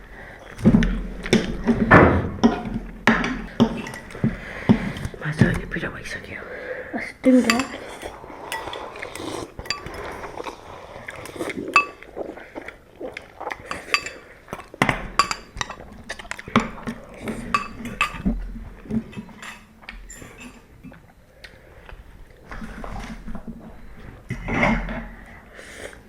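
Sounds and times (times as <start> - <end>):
utensils clinking against bowls: 2.4 - 5.2, 7.3 - 12.0, 13.5 - 20.7.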